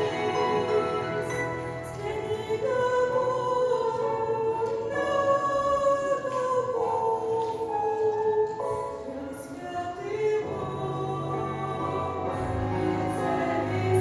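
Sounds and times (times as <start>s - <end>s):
singing in long held notes: 9.4s - 14.0s.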